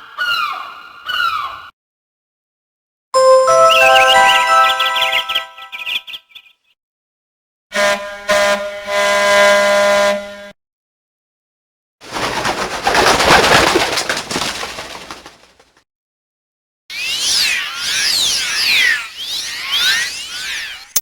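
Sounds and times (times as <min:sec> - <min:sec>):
buzzy phone ringtone chord: 0:03.2 - 0:05.9.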